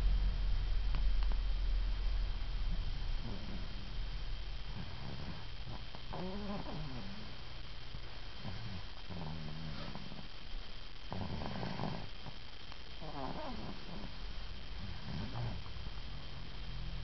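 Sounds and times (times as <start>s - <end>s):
child snoring: 3.2s - 3.9s, 4.7s - 7.4s, 8.4s - 10.3s, 11.1s - 12.4s, 13.0s - 16.0s.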